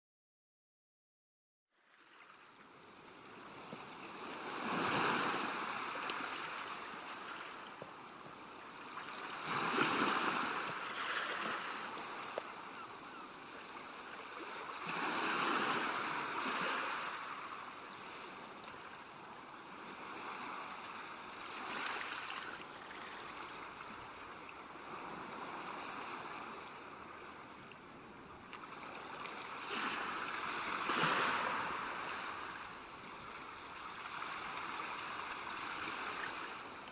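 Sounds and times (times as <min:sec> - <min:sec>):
ocean waves breaking on shore: 0:01.8 - 0:36.9.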